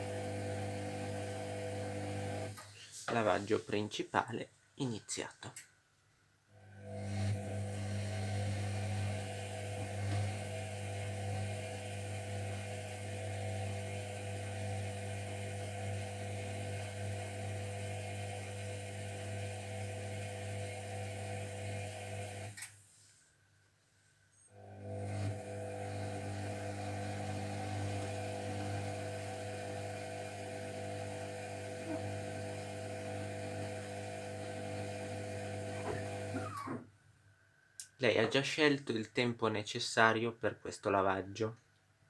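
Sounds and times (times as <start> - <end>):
washing machine running: 0.0 - 2.6, 24.6 - 36.8.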